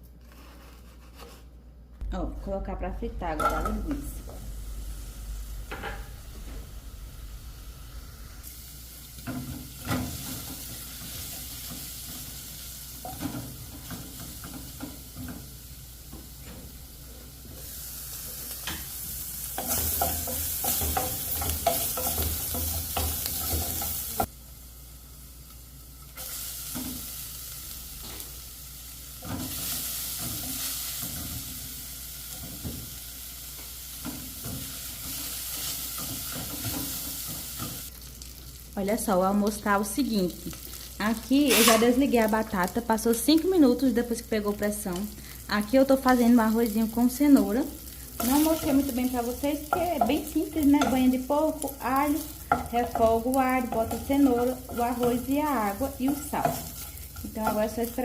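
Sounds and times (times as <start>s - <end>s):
sausage sizzling in a pan: 3.8s - 58.0s
utensil knocking and scraping pan: 19.5s - 24.3s.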